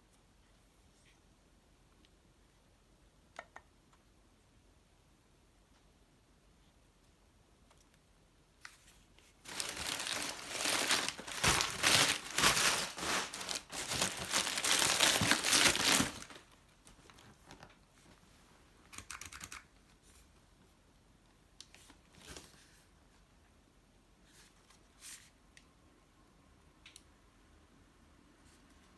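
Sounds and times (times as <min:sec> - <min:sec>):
packaging crinkling and tearing: 0:09.4 - 0:17.7.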